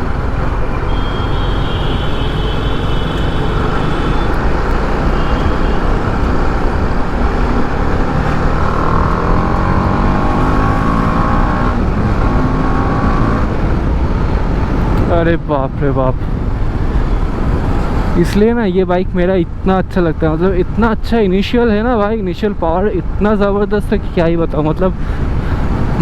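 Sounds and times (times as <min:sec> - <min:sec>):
motorcycle engine at speed: 0:00.0 - 0:15.0
wind rush on microphone: 0:00.0 - 0:18.2, 0:23.0 - 0:26.0.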